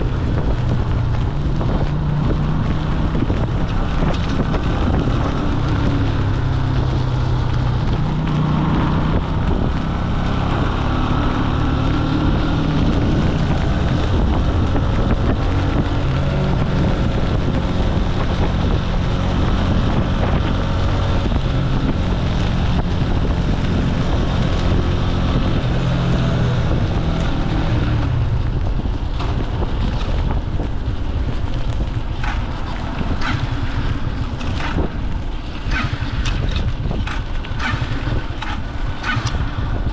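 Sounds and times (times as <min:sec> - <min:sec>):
motorcycle engine running: 0:00.0 - 0:39.9
wind on microphone: 0:00.0 - 0:39.9.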